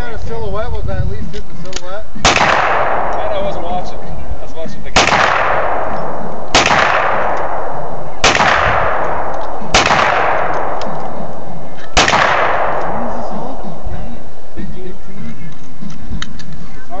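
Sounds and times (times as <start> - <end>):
handgun shots: 2.2 - 3.6, 5.0 - 13.3.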